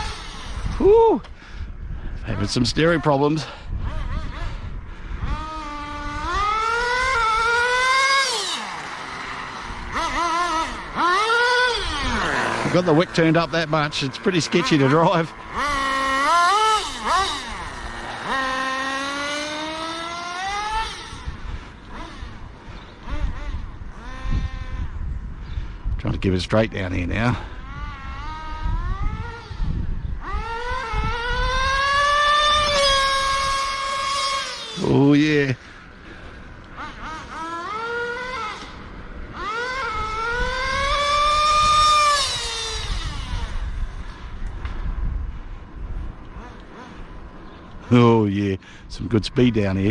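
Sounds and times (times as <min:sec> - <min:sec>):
small engine revving: 0:00.0 - 0:01.4, 0:02.3 - 0:25.2, 0:26.8 - 0:45.0, 0:46.1 - 0:48.0.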